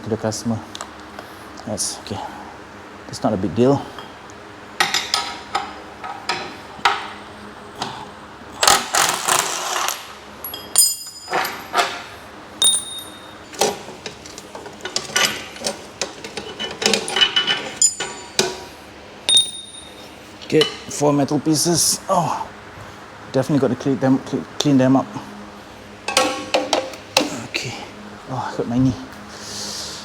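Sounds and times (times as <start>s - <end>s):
high metallic ring: 10.4s - 11.7s, 12.6s - 13.5s, 17.8s - 18.5s, 19.3s - 20.8s
metallic clanks and clinks: 10.4s - 12.0s, 12.6s - 18.7s, 19.3s - 20.9s, 26.1s - 27.0s.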